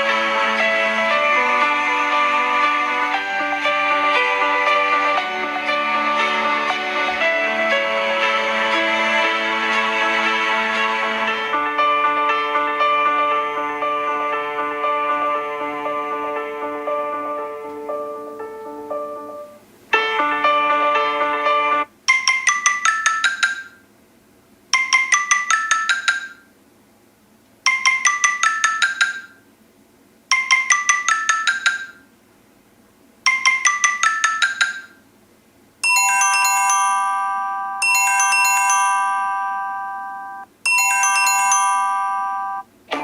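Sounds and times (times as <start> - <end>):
ringtone with held bright chords: 0.0 - 23.9, 24.7 - 26.5, 27.6 - 29.4, 30.3 - 32.1, 33.2 - 35.0, 35.8 - 42.8
marimba-like ringtone: 16.9 - 19.6, 22.1 - 23.8, 24.8 - 26.4, 27.7 - 29.4, 30.3 - 32.0, 33.3 - 35.0, 35.8 - 42.7.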